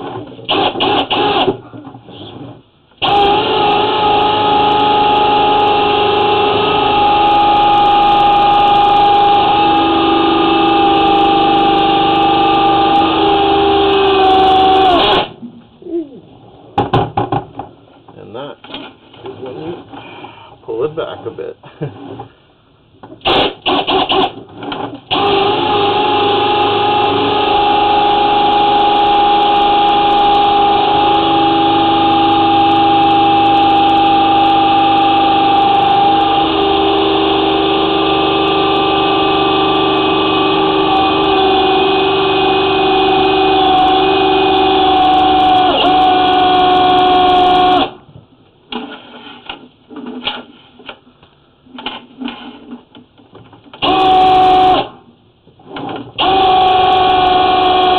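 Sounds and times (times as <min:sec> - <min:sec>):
drain cleaning machine motor: 0:03.0 - 0:15.0, 0:25.1 - 0:47.9, 0:56.2 - 0:57.9
short knocks and clatters: 0:16.8 - 0:19.3.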